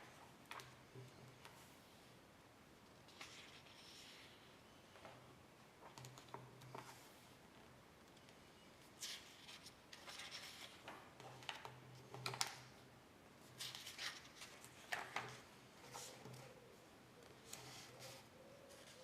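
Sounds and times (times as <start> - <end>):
faint scratching and clicking: 5.8 - 7.1.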